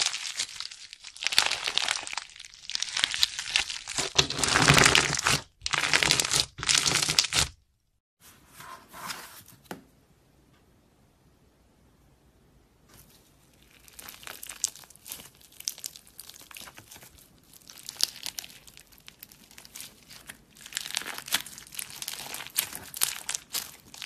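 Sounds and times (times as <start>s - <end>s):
slime crackling and popping: 0.0s - 7.6s, 13.6s - 24.0s.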